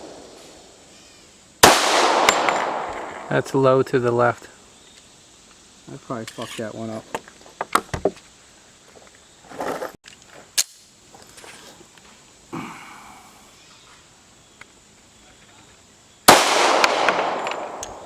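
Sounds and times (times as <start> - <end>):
pistol shot echoing: 1.6 - 3.3, 16.3 - 18.0.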